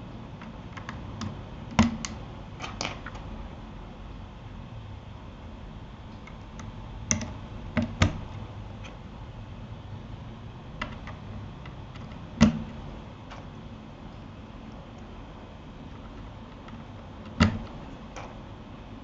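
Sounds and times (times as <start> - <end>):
mechanical keyboard clicks: 0.4 - 3.3.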